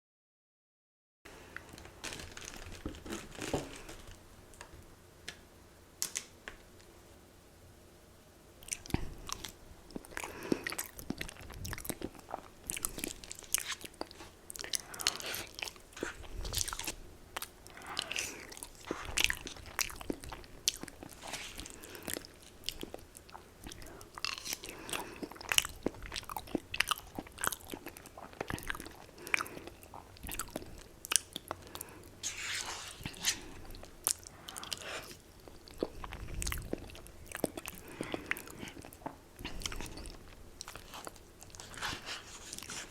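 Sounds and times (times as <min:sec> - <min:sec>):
crunchy chicken chewing: 0:08.6 - 0:42.9.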